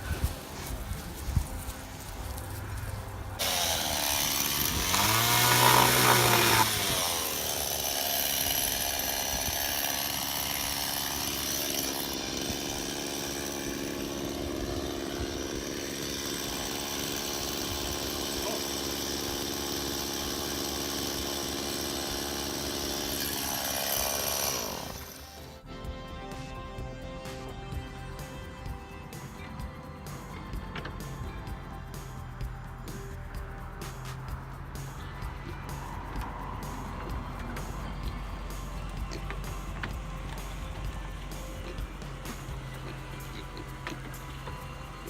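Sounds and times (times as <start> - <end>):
motorised power tool running: 0.0 - 25.6, 36.5 - 45.0.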